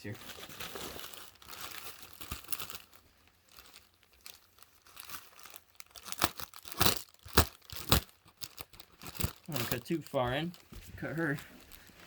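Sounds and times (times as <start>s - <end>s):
cardboard crackling: 0.0s - 12.0s
cardboard rustling: 0.0s - 12.0s.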